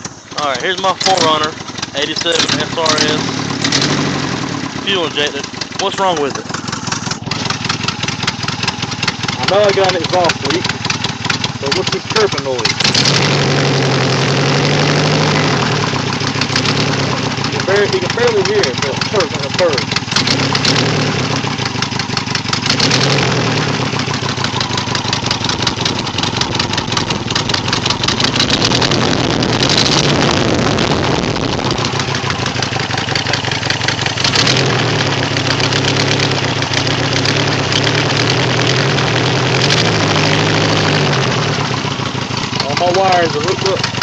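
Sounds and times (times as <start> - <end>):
car engine running: 0.0 - 44.0
exhaust leak ticking: 0.0 - 44.0.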